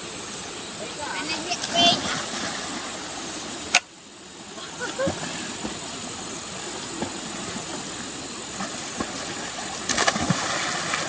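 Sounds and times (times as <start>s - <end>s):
shallow water sloshing: 6.5s - 11.0s
water splash: 8.5s - 11.0s.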